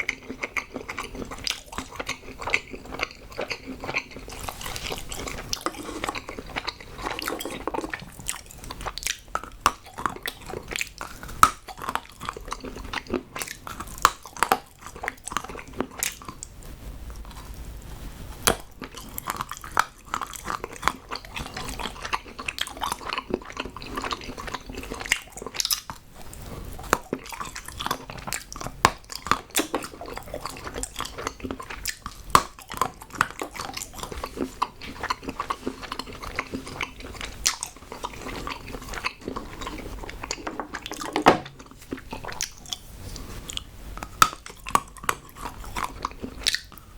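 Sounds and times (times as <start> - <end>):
chewing hard chocolate: 0.0 - 16.6, 18.4 - 46.9
crunchy snaps and clicks: 26.8 - 42.8.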